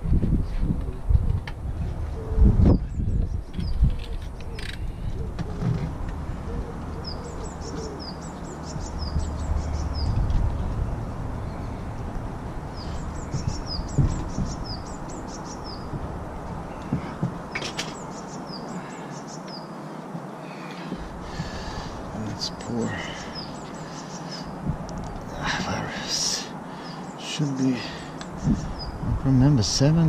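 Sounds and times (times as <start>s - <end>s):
songbird singing: 0.0s - 30.0s
steady outdoor hiss: 0.0s - 30.0s
low rumble: 4.8s - 17.5s.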